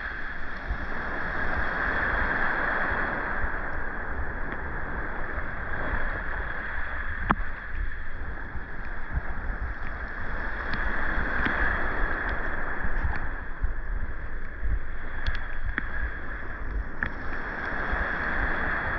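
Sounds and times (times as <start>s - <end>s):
sea water splashing at shore: 0.0s - 13.6s
wind rumbling on microphone: 0.0s - 18.9s
faint clicks: 7.2s - 7.6s, 8.8s - 11.6s, 12.2s - 13.4s, 14.3s - 17.8s.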